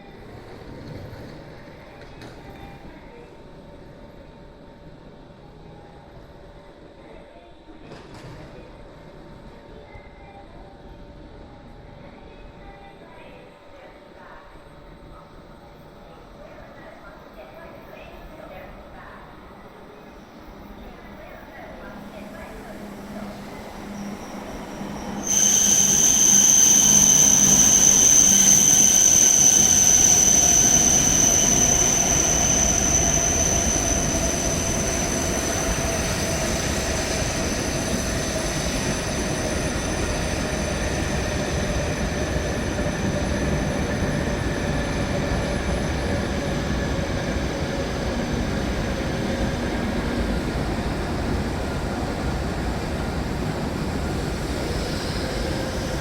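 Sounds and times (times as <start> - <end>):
high-speed train whining: 10.2 - 56.0
train rumble: 20.4 - 56.0.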